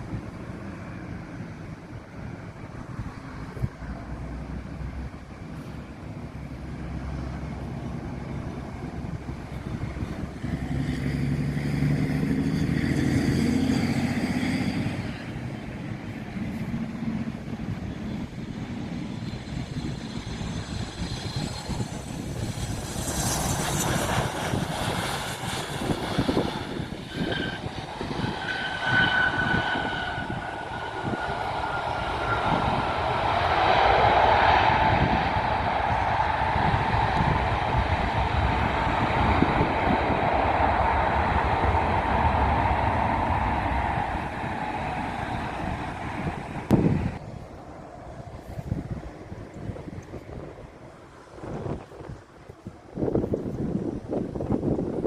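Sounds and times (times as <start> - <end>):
high turbine whine: 15.0 - 55.0
jet engines running: 15.0 - 55.0.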